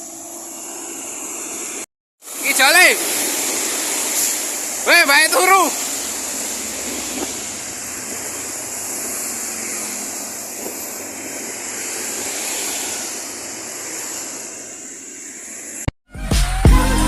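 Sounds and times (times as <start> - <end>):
rain hissing: 0.0 - 15.9
traffic on a wet road: 1.5 - 14.3.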